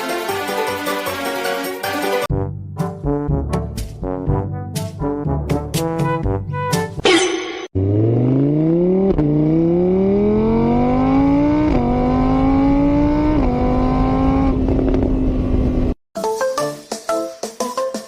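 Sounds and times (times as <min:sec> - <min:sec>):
vehicle engine accelerating: 0:07.8 - 0:16.0.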